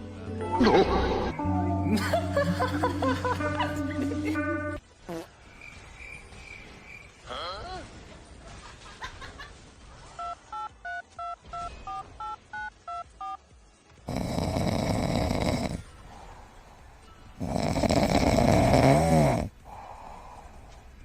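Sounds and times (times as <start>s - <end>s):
phone keypad beeps: 10.2s - 13.4s
loud snoring: 14.1s - 15.9s, 17.4s - 19.8s.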